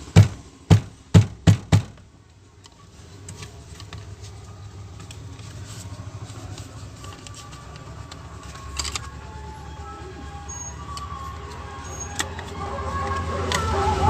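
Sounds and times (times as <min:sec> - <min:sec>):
sharp knocks: 0:00.0 - 0:02.0.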